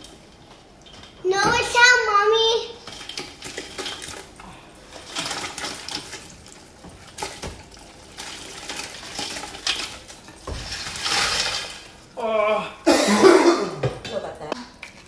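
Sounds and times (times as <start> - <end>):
knocks and clatter: 0.0 - 2.2, 2.8 - 12.1
water splashing and sloshing: 0.0 - 12.2.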